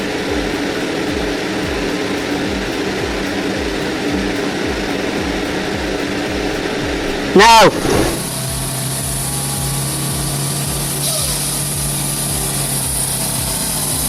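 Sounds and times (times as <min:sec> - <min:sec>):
engine running steadily: 0:00.0 - 0:14.0.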